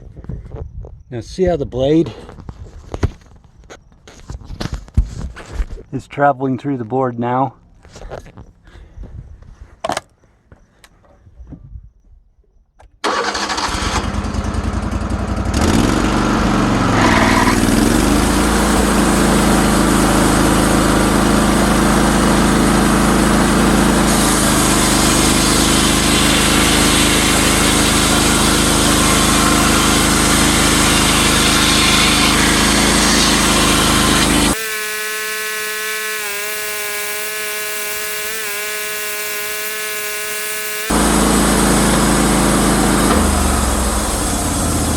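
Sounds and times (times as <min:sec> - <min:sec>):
sawmill engine running: 0:13.0 - 0:44.9.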